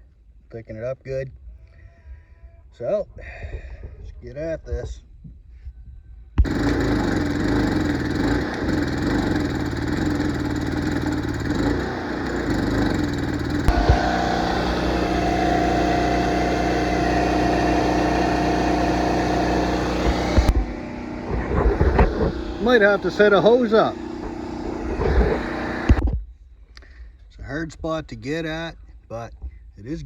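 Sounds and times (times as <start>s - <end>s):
steady hum: 6.4s - 26.0s
welding arc crackling and sizzling: 6.4s - 26.0s.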